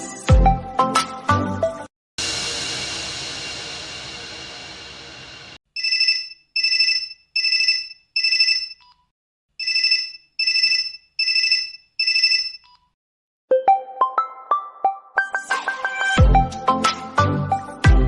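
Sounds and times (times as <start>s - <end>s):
phone ringtone electronic rings: 5.8s - 8.9s, 9.6s - 12.7s.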